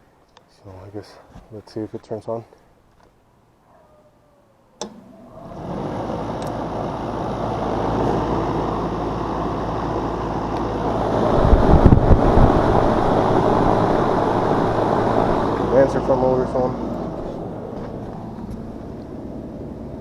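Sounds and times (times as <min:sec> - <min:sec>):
fan motor rushing hum: 0:04.8 - 0:20.0
wind thuds on microphone: 0:10.9 - 0:15.7.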